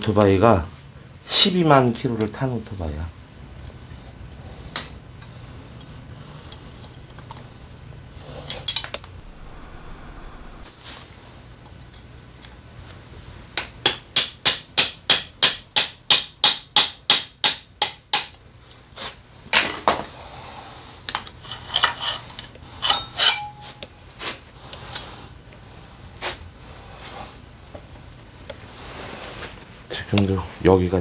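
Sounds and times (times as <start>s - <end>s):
hammer tapping on metal: 13.6s - 18.4s, 22.8s - 23.9s.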